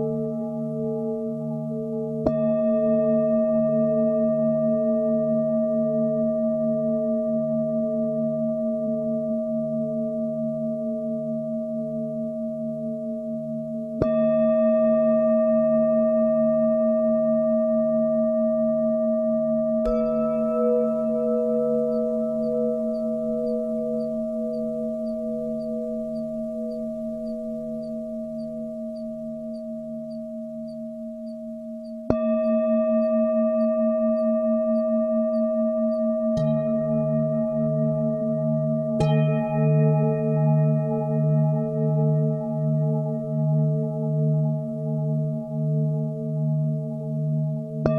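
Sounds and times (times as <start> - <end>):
singing bowl struck: 0.0 - 4.0, 19.8 - 38.3
singing bowls ringing: 19.8 - 43.1.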